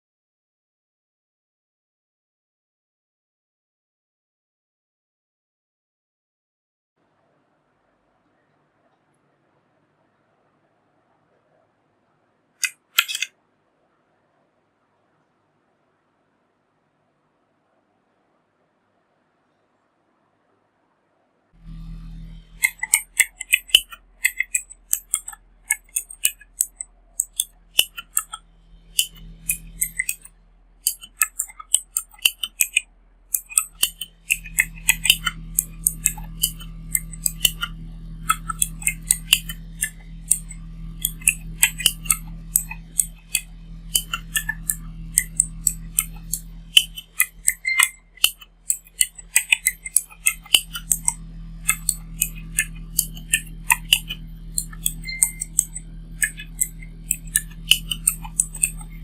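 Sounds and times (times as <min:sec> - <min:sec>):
mechanical keyboard typing: 0:22.4 - 0:59.0.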